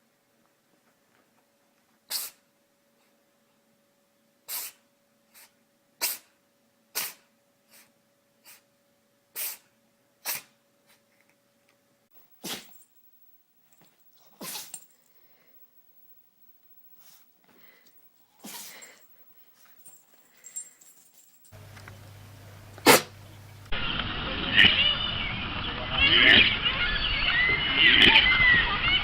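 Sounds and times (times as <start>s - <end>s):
animal sneezing: 2.1s - 2.4s, 4.5s - 6.3s, 6.9s - 8.6s, 9.3s - 10.6s, 12.4s - 12.8s, 14.3s - 14.9s, 18.4s - 19.0s, 22.7s - 23.7s.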